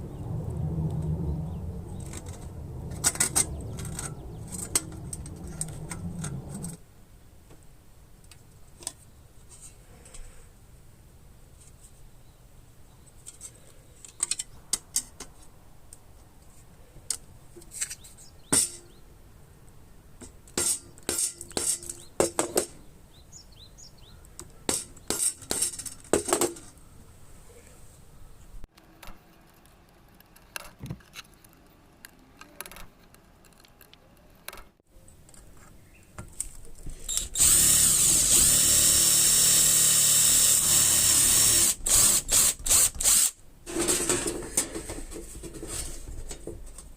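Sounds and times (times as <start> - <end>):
metal parts clicking and knocking: 2.0 - 6.8, 13.3 - 15.3, 24.7 - 26.8
electric power tool running: 37.1 - 43.3.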